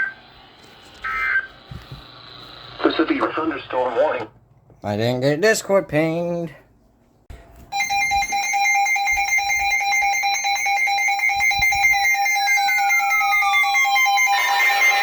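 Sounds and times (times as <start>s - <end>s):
rapidly pulsing alarm tone: 7.8s - 15.0s.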